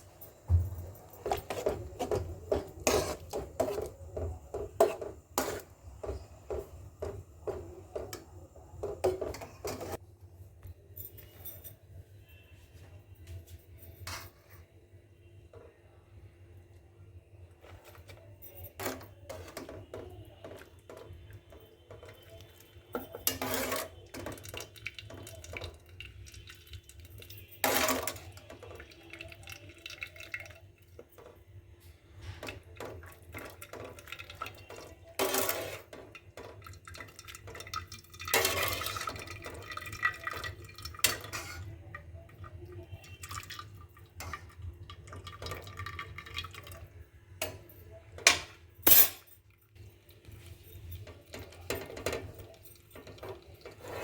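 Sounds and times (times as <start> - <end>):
dishes and utensils clinking: 0.0 - 10.0, 17.6 - 25.8, 27.0 - 28.9, 32.2 - 41.8, 47.4 - 49.6, 50.4 - 54.0.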